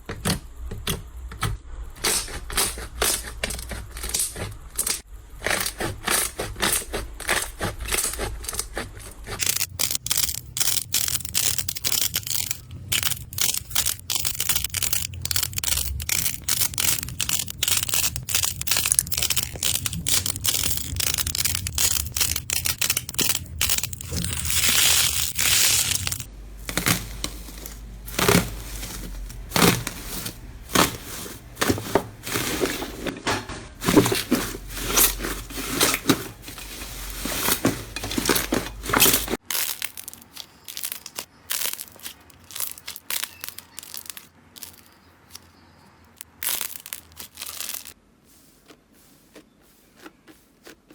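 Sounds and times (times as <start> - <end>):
slime crackling and popping: 9.4 - 32.6, 38.2 - 45.0, 46.2 - 48.0.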